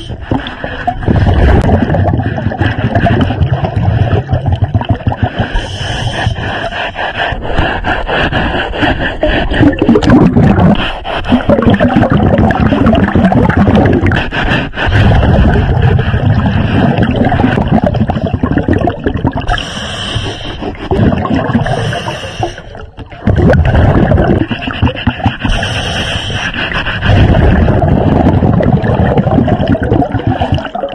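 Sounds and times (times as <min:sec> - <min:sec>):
gurgling exhaled bubbles: 0:00.0 - 0:06.7, 0:09.1 - 0:30.9
regulator breathing hiss: 0:19.6 - 0:20.6, 0:21.8 - 0:22.7.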